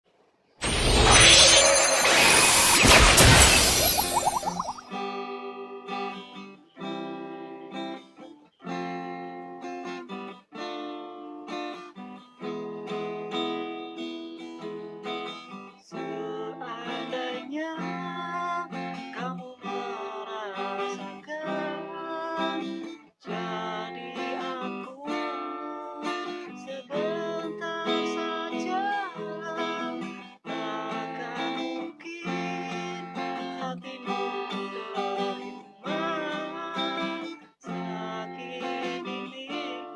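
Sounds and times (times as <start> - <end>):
wavering guitar melody: 3.9 - 23.1, 23.7 - 39.9
acoustic guitar strummed chords: 4.9 - 39.9.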